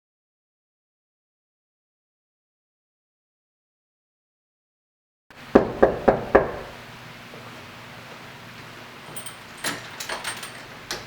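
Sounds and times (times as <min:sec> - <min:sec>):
knocking on a door: 0:05.5 - 0:06.8.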